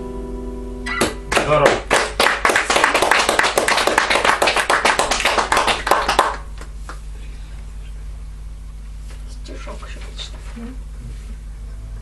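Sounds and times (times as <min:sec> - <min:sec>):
audience applauding: 0:01.0 - 0:07.0.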